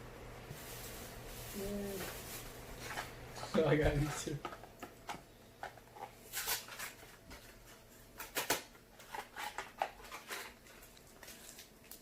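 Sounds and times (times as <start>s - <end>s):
plastic wrapper crinkling: 0.5s - 3.2s, 5.6s - 12.0s.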